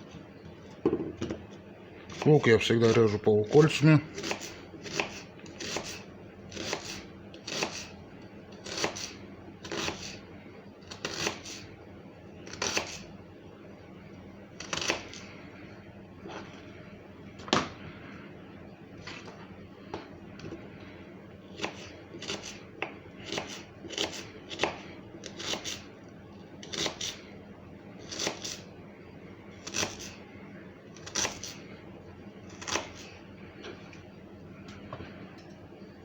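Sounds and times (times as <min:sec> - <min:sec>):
knife slicing onion on board: 0:04.1 - 0:08.0, 0:08.6 - 0:10.2, 0:10.9 - 0:11.7, 0:12.5 - 0:13.1, 0:14.6 - 0:15.3, 0:21.5 - 0:25.9, 0:26.6 - 0:27.2, 0:28.0 - 0:28.6, 0:29.6 - 0:30.2, 0:31.0 - 0:31.6, 0:32.5 - 0:33.1.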